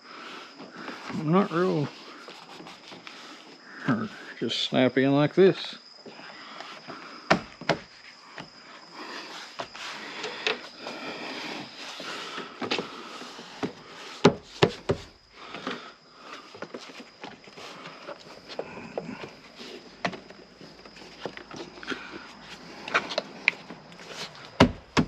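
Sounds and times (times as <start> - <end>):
rubbing and rustling: 0.5 - 3.6.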